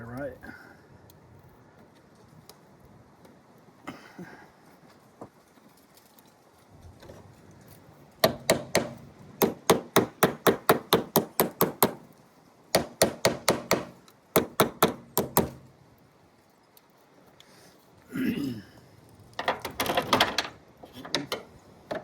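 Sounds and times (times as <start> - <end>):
faint handling sounds: 4.4 - 8.2
hammer tapping metal: 8.2 - 12.0, 12.8 - 15.6.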